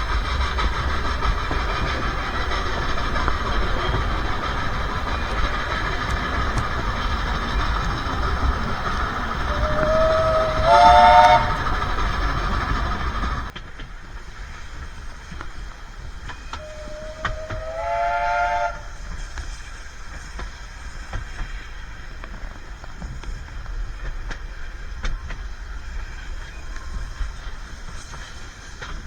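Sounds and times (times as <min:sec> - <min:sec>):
steam locomotive whistle: 0:00.0 - 0:13.5, 0:16.4 - 0:19.3
train rumbling: 0:00.0 - 0:29.0.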